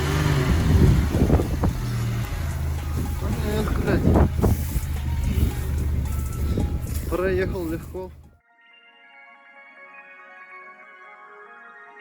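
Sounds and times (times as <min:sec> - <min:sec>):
off-road vehicle engine under load: 0:00.0 - 0:08.4.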